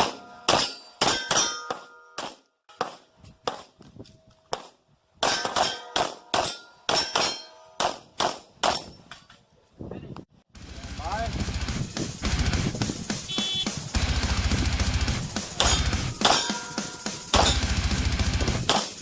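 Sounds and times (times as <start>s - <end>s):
metallic clang of steel targets: 0.0s - 3.7s, 4.5s - 9.3s, 15.0s - 19.0s
rapid pistol fire: 10.6s - 19.0s.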